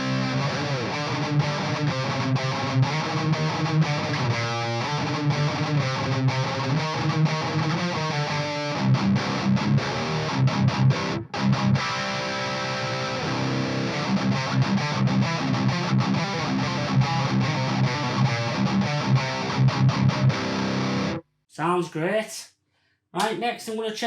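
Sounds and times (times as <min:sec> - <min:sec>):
distorted electric guitar riff: 0:00.0 - 0:21.2.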